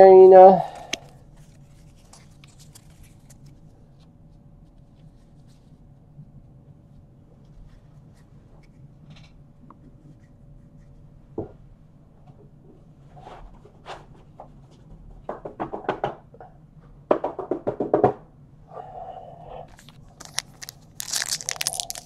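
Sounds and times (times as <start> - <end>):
faint steady hum: 0.0 - 22.0
trading cards rustling: 0.7 - 5.7, 19.7 - 22.0.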